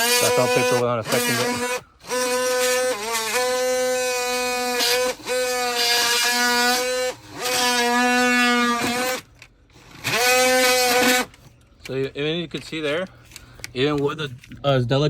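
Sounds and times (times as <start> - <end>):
rotary tool high whine: 0.0 - 11.6.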